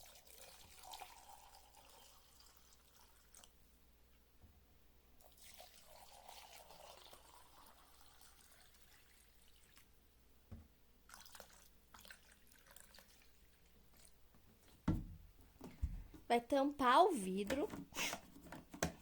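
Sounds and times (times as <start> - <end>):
liquid trickling: 0.0 - 3.6, 5.2 - 9.9, 11.1 - 14.8.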